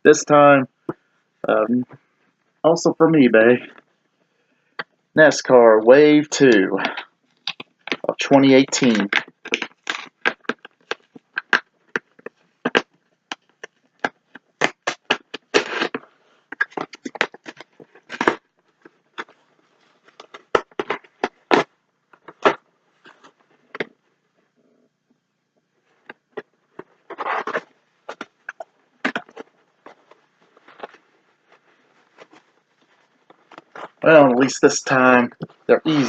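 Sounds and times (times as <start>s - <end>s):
cardboard and plastic crackling: 6.8s - 24.0s, 25.9s - 34.2s.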